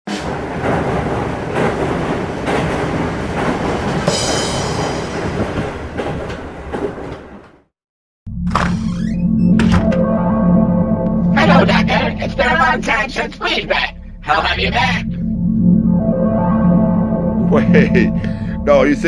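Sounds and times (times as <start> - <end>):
loud rumbling noise: 9.9 - 19.0.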